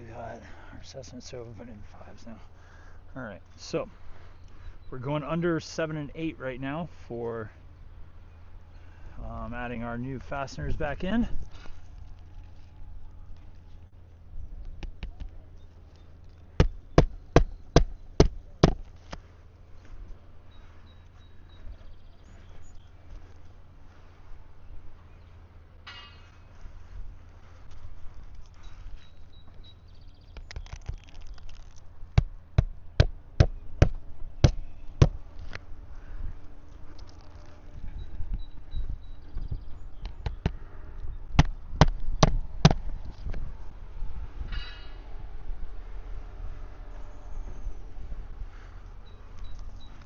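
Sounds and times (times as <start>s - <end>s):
hammer striking roofing nail: 16.6s - 18.8s.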